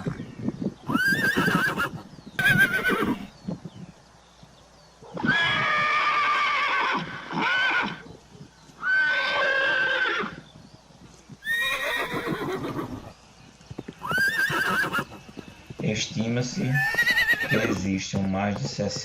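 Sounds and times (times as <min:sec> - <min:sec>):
horses neighing: 0:00.8 - 0:03.3, 0:05.2 - 0:08.1, 0:08.8 - 0:10.5, 0:11.4 - 0:13.2, 0:13.8 - 0:19.0.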